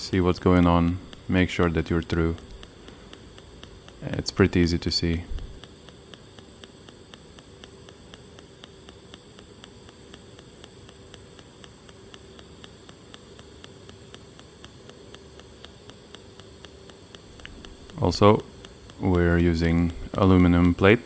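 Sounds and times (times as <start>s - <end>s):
faint regular ticking: 0.0s - 21.0s
welding arc hissing: 0.0s - 21.0s.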